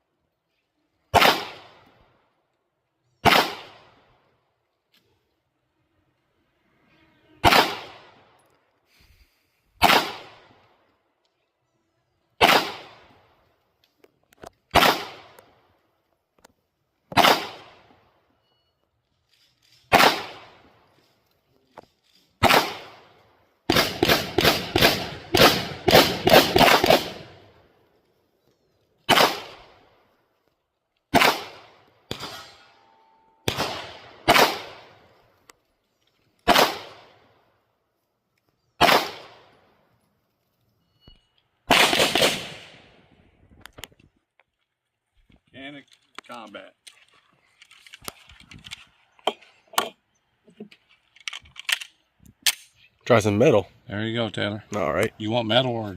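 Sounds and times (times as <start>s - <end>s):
pistol shots: 1.1s - 1.8s, 3.2s - 4.0s, 7.4s - 8.2s, 9.8s - 10.6s, 12.4s - 13.1s, 14.7s - 15.4s, 17.1s - 17.9s, 19.9s - 20.6s, 22.4s - 23.1s, 23.7s - 27.4s, 29.1s - 29.8s, 31.1s - 32.5s, 33.4s - 35.1s, 36.4s - 37.2s, 38.8s - 39.5s, 41.7s - 42.9s.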